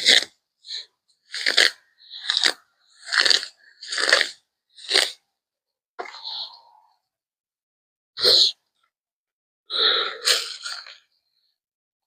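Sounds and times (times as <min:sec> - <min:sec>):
weeds being pulled by hand: 0:01.3 - 0:05.1.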